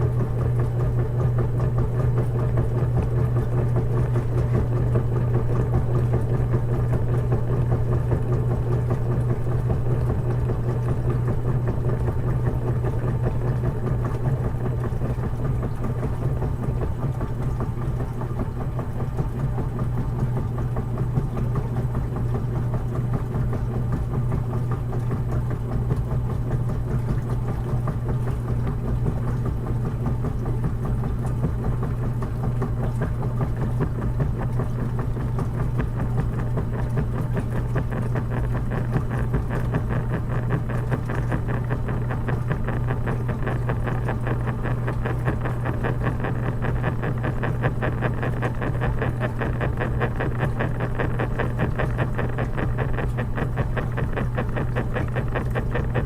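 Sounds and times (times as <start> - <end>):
washing machine running: 0.0 - 56.0.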